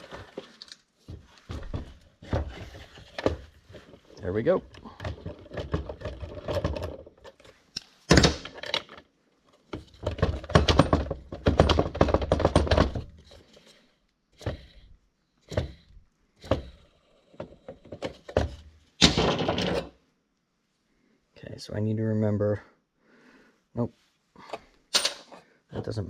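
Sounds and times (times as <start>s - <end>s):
metal parts clanking and rattling: 4.7s - 13.6s, 17.4s - 20.0s, 24.9s - 26.0s.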